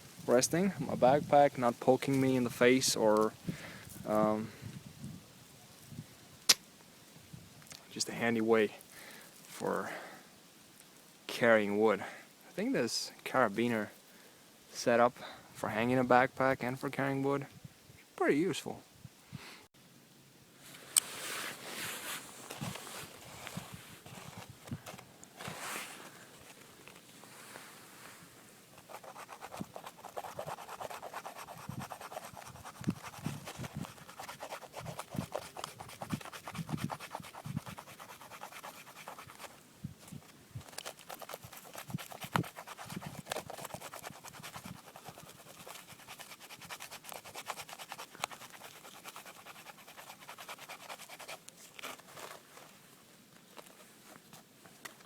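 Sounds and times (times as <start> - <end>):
footsteps crunching through snow: 20.6 - 28.4
scratchy rustling and scraping: 20.6 - 55.0.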